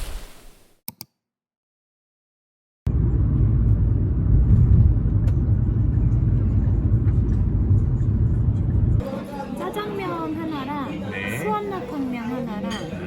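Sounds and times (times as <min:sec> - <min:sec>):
steady low rumble: 0:02.9 - 0:09.0.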